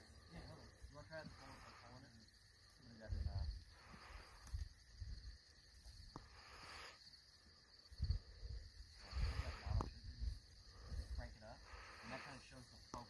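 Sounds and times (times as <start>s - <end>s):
night insects chirping: 0.0s - 13.0s.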